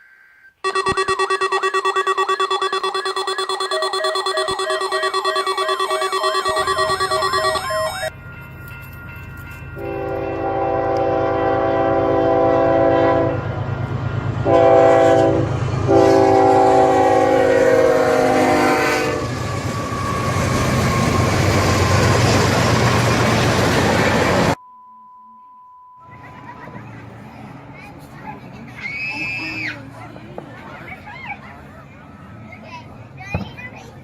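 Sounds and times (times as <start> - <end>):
chord horn blasts: 0.6 - 8.1, 9.8 - 13.6, 14.4 - 19.4
electronic music: 0.6 - 8.1.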